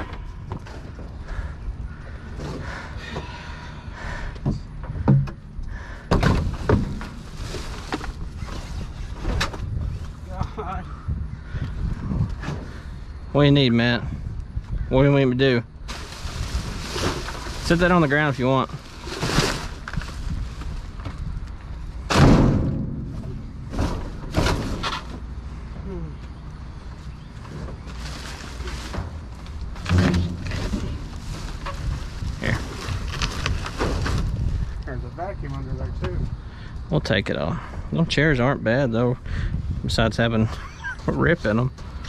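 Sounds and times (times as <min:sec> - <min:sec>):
steady low rumble: 0:00.0 - 0:42.0
knocks and thuds of junk handled: 0:04.4 - 0:05.4, 0:06.1 - 0:08.2, 0:22.0 - 0:25.4, 0:28.6 - 0:32.3
heavy thud: 0:22.0 - 0:25.2, 0:29.8 - 0:31.2.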